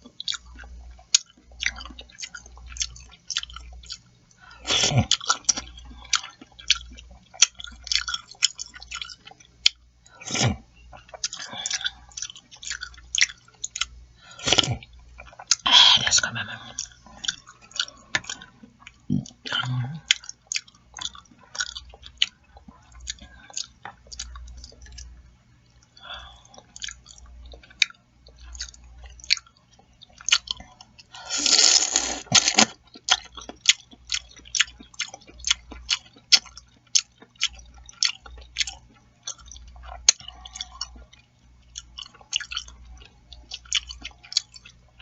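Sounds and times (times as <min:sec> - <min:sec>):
chewing and lip-smacking: 0:00.0 - 0:45.0
slurping soup: 0:31.2 - 0:32.8.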